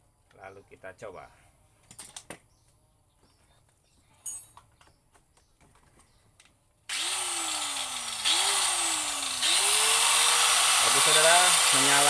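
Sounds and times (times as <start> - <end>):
angle grinder motor whining: 6.9 - 12.0.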